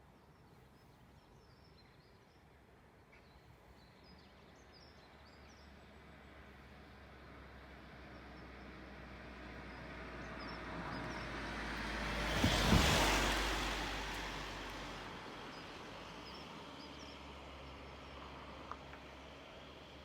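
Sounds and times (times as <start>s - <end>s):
car passing by: 7.4s - 20.0s
low thumps: 12.2s - 13.8s.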